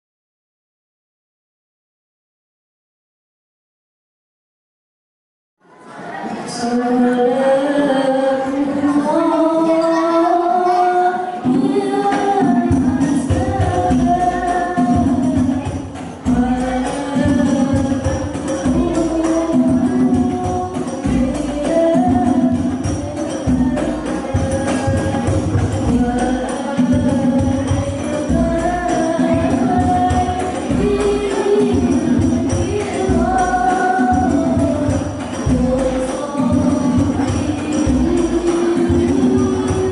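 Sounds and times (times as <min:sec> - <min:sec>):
voices singing in unison: 0:05.8 - 0:39.9
frame drums in steady rhythm: 0:11.4 - 0:39.9.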